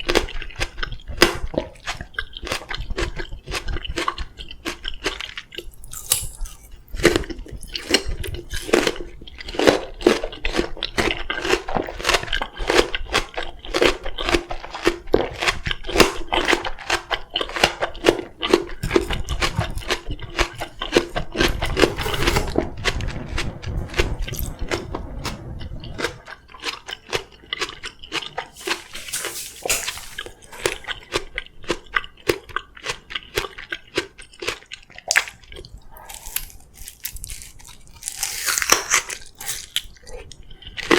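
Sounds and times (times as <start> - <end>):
chewing and biting melon: 0.0 - 40.9
low rumble: 19.1 - 27.2.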